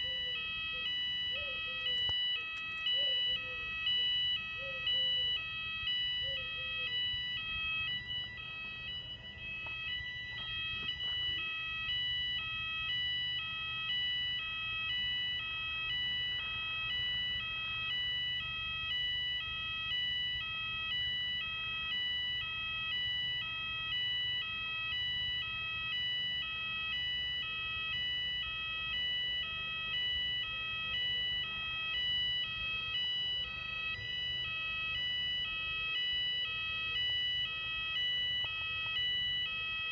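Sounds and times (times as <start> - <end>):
two-tone fire alarm: 0.0 - 39.9.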